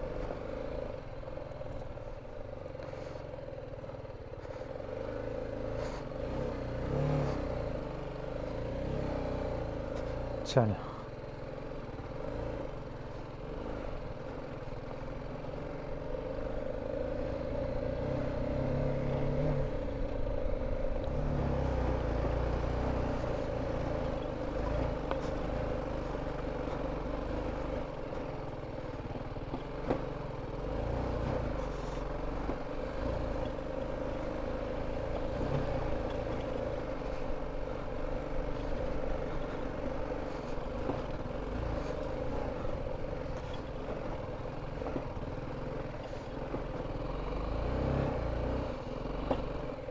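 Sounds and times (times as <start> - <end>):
motorcycle engine running: 0.0 - 49.9
clatter: 23.0 - 49.9.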